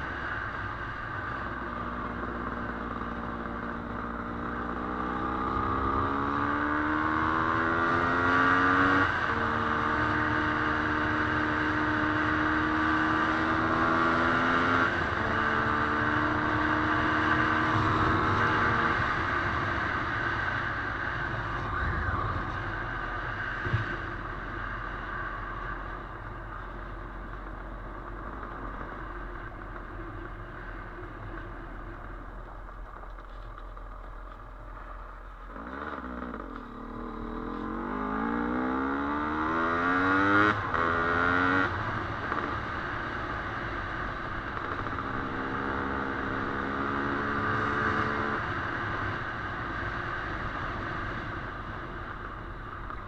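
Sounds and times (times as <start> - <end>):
wind: 0.0 - 53.0.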